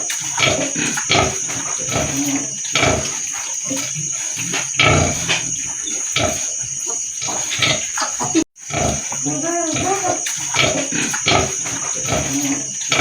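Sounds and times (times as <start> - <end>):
pigs grunting: 0.0 - 13.0.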